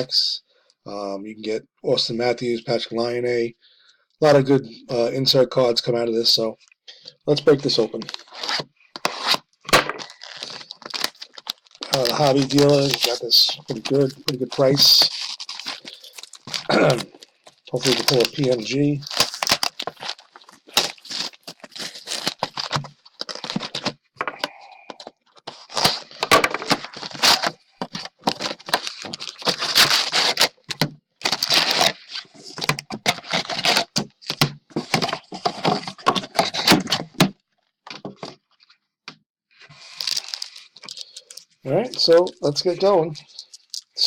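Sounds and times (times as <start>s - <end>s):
plastic wrap and cardboard tearing: 7.5s - 37.3s, 39.8s - 41.4s.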